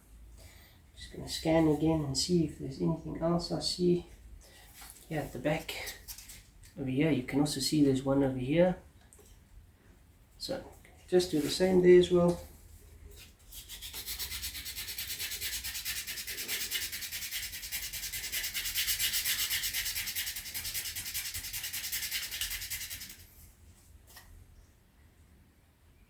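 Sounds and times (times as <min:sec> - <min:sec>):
sandpaper rubbing on wood: 0:13.5 - 0:23.3.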